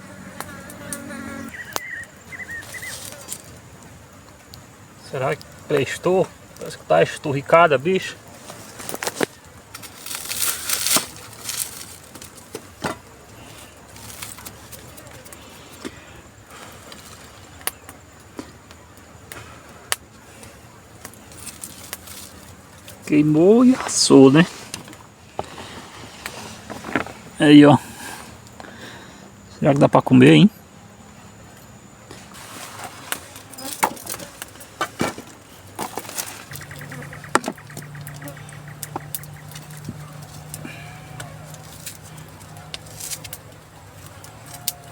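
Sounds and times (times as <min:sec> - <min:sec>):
campfire crackling and popping: 0:00.3 - 0:29.1, 0:32.1 - 0:44.9
dry brittle cracks and snaps: 0:08.7 - 0:15.5, 0:21.0 - 0:23.0, 0:37.5 - 0:44.9
low engine hum with ticking: 0:36.5 - 0:44.5.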